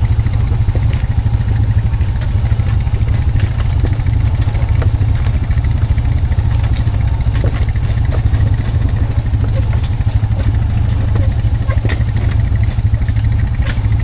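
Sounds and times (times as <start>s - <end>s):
atv engine running: 0.0s - 14.0s
clanks and rattles: 0.0s - 14.0s.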